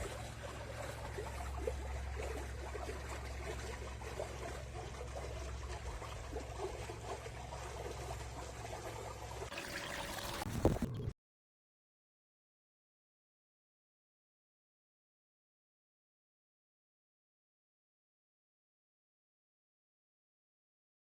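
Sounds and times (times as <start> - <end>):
water trickling and lapping: 0.0 - 11.1.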